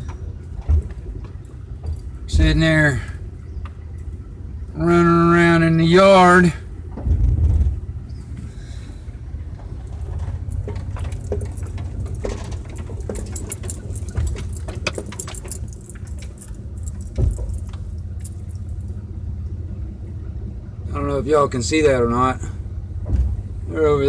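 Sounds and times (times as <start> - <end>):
vehicle engine idling: 0.0 - 24.0
small clicks and rattles: 9.8 - 19.0.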